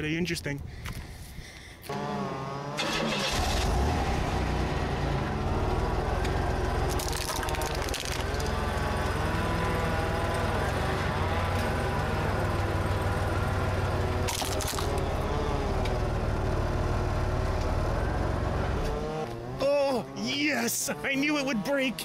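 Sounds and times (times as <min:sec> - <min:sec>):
car engine running: 0:01.9 - 0:22.0
plastic camera cracking under tire: 0:06.9 - 0:08.6, 0:14.3 - 0:15.1.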